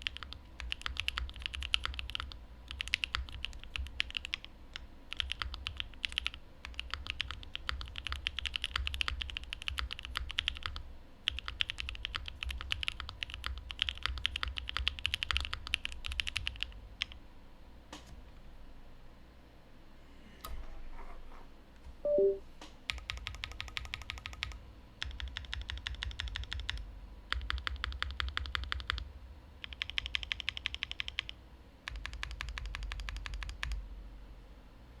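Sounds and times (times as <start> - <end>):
mechanical keyboard typing: 0.0 - 17.2, 22.1 - 33.8
two-note falling blip: 22.1 - 22.4.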